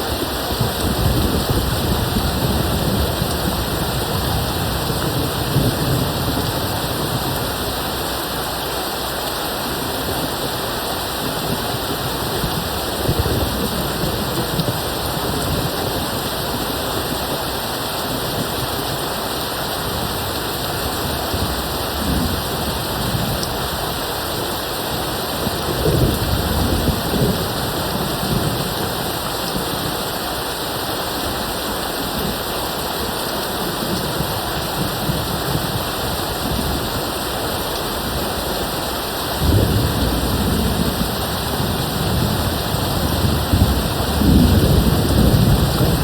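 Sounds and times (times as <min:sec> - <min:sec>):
steady rain falling: 0:00.0 - 0:46.0
distant thunder rumbles: 0:37.7 - 0:46.0.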